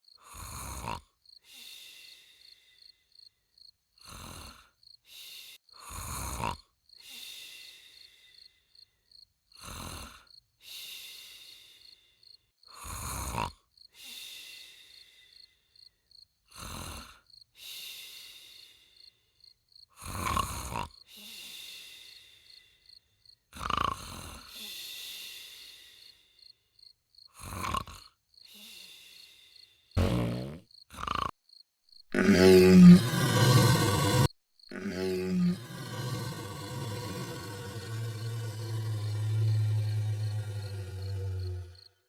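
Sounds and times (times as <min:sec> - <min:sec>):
person snoring: 0:00.2 - 0:01.0, 0:04.0 - 0:04.7, 0:05.8 - 0:06.6, 0:09.6 - 0:10.2, 0:12.8 - 0:13.5, 0:16.6 - 0:17.2, 0:20.0 - 0:21.3, 0:23.6 - 0:24.7, 0:27.4 - 0:28.0, 0:30.0 - 0:31.4, 0:32.1 - 0:42.0
hissing breath out with whistle: 0:32.2 - 0:41.8.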